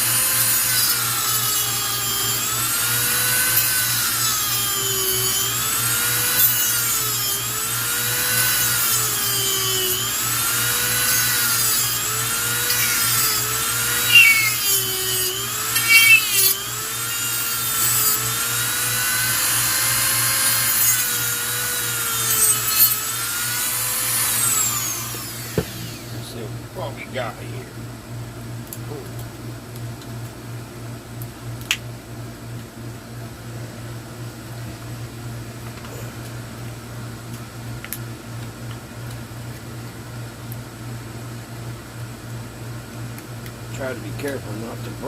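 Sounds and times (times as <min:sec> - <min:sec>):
rotary tool cutting plastic: 0:00.0 - 0:26.0.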